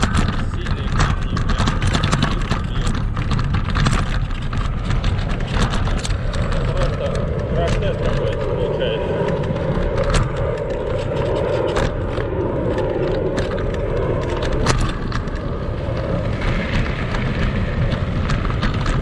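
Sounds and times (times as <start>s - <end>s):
frame rattles and knocks: 0.0s - 8.4s
scooter rumble on rough ground: 0.0s - 19.0s.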